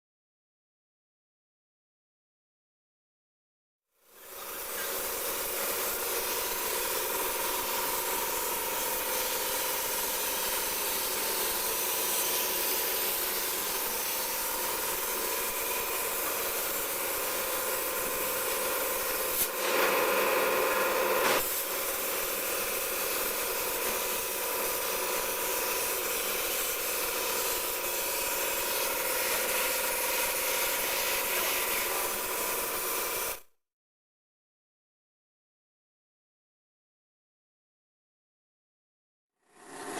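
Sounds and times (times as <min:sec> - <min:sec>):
plasma cutter hissing: 0:04.2 - 0:33.4.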